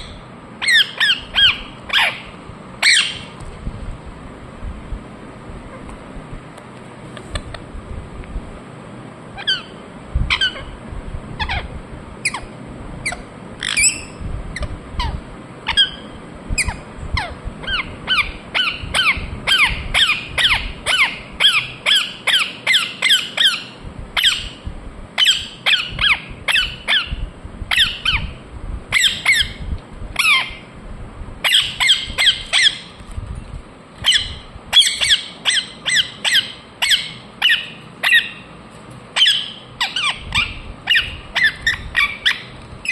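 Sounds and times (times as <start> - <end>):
parrot chirping: 0.0 - 3.4, 9.4 - 10.8, 11.4 - 24.6, 25.2 - 29.6, 30.2 - 30.7, 31.4 - 33.0, 34.0 - 38.6, 39.2 - 42.9.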